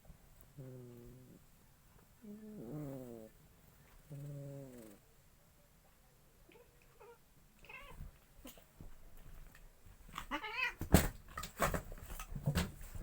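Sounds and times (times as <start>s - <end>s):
cats yowling in a fight: 10.1s - 10.9s.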